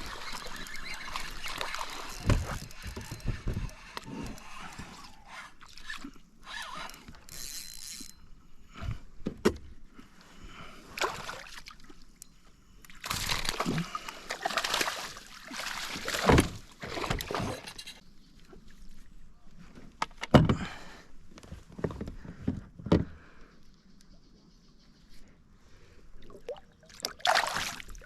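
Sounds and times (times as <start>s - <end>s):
river water splashing: 0.0s - 2.3s, 13.2s - 17.4s, 26.2s - 28.0s.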